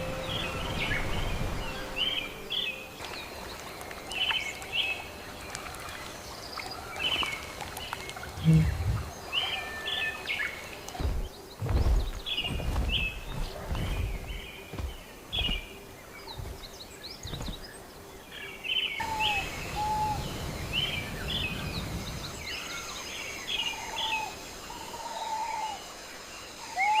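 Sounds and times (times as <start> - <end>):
birds chirping and whistling: 0.0 - 25.8
high insect drone: 0.0 - 27.0
low rumbles: 8.2 - 9.4, 10.8 - 17.7.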